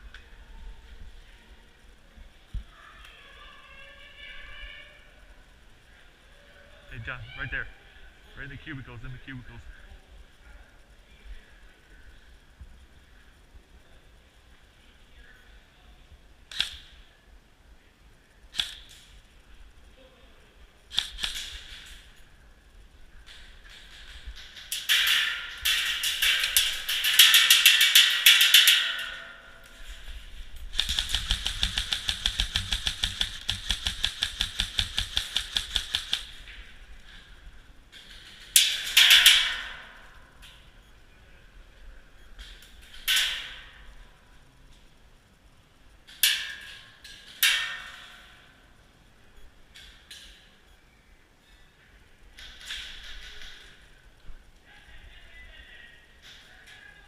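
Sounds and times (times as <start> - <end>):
airsoft gun shots: 20.9 - 22.0, 30.7 - 36.4.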